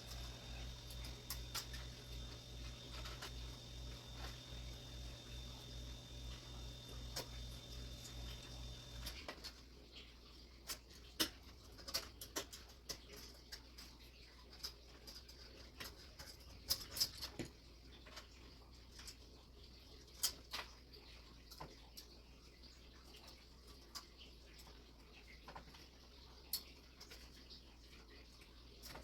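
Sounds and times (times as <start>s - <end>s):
low hum with high tone: 0.0s - 9.3s
computer parts clicking and tapping: 0.0s - 9.6s.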